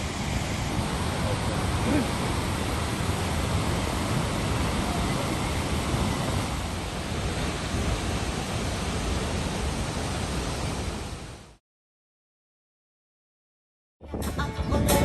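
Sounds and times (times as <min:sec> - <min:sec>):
waterfall rushing: 0:00.0 - 0:11.6.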